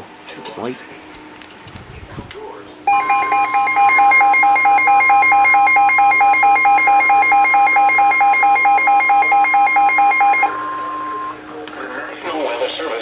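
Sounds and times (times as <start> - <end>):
rapid alert beeping: 2.9 - 10.6
steady warning tone: 2.9 - 11.5.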